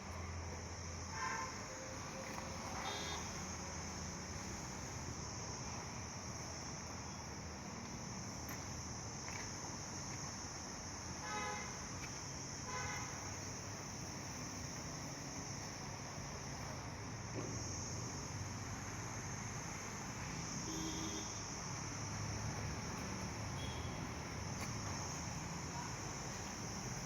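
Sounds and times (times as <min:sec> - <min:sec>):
vehicle horn toots: 0:20.7 - 0:21.4, 0:23.6 - 0:24.1.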